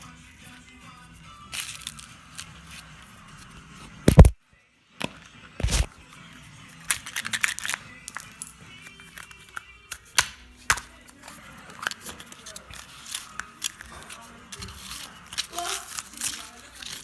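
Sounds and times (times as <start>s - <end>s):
faint background music: 0.0s - 17.0s
foil and plastic crackling: 1.5s - 2.9s, 5.6s - 5.9s, 6.8s - 17.0s.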